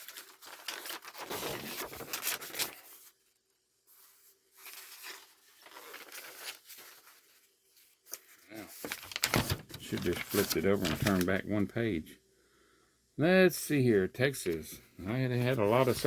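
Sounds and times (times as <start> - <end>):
paper pages rustling: 0.0 - 3.2, 3.9 - 11.7, 15.2 - 16.0.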